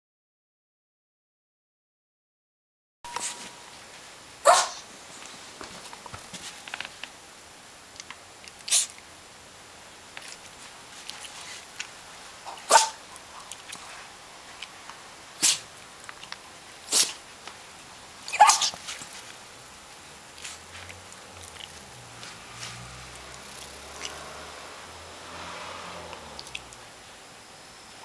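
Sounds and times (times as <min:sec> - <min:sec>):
dog sneezing: 0:04.4 - 0:04.9, 0:08.7 - 0:09.0, 0:12.5 - 0:13.0, 0:15.4 - 0:15.7, 0:16.8 - 0:17.2, 0:18.3 - 0:19.0.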